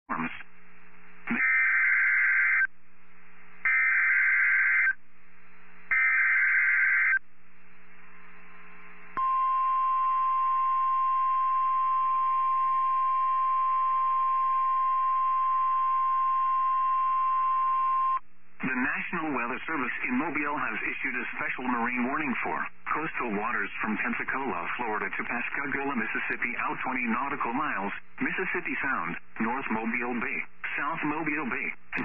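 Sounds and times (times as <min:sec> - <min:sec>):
radio hiss: 0:00.1 - 0:00.5, 0:18.6 - 0:32.0
steady warning alarm tone: 0:03.7 - 0:05.0, 0:05.9 - 0:07.2, 0:09.2 - 0:18.2.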